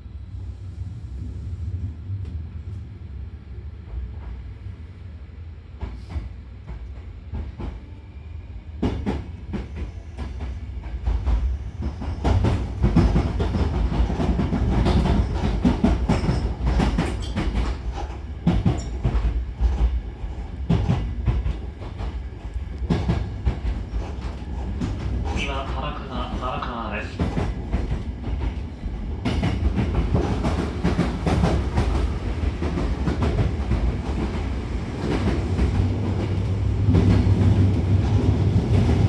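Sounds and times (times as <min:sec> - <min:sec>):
train low rumble: 0:00.0 - 0:39.0.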